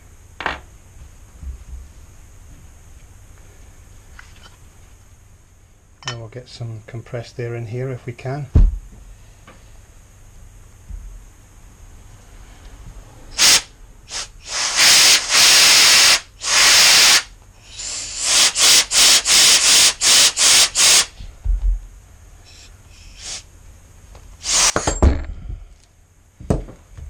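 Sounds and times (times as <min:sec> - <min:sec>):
compressed air blow gun hissing: 0:13.3 - 0:21.2, 0:22.5 - 0:23.5, 0:24.4 - 0:24.8.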